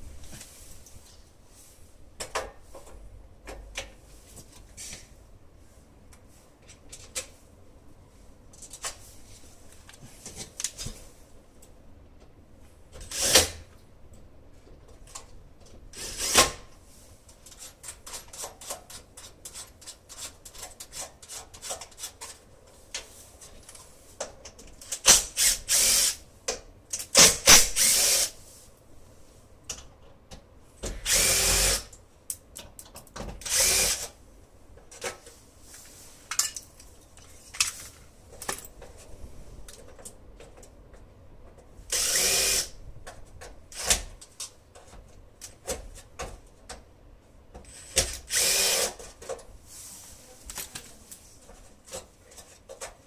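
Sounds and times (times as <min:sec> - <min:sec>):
power drill running: 0:25.4 - 0:26.2, 0:27.7 - 0:28.3, 0:31.0 - 0:31.9, 0:33.4 - 0:34.1, 0:41.9 - 0:42.7, 0:47.8 - 0:49.0
small clicks and knocks: 0:31.9 - 0:33.4.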